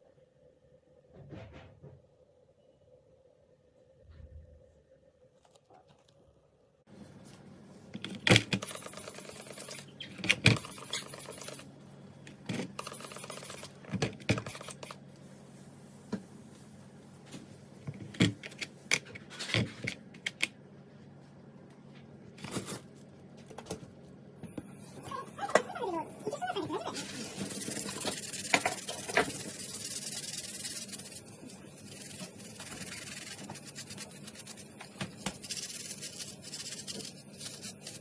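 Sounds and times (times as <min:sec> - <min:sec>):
steady low hum: 0:06.2 - 0:38.0.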